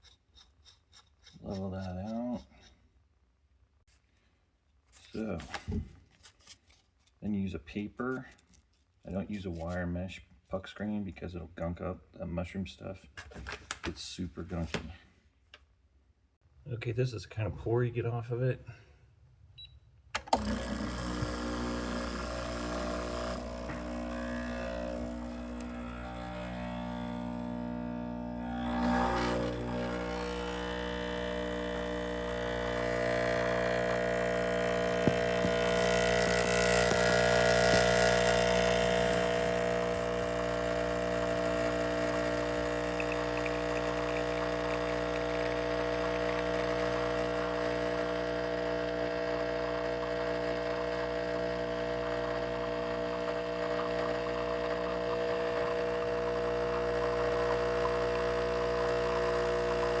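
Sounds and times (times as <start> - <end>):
espresso machine pump humming: 20.2 - 60.0.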